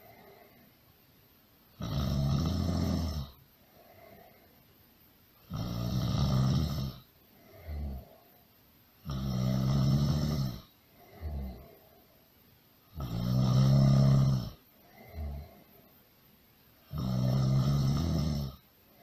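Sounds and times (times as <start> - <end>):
person snoring: 1.8 - 4.4, 5.5 - 8.3, 9.0 - 12.0, 12.9 - 15.7, 16.9 - 18.6.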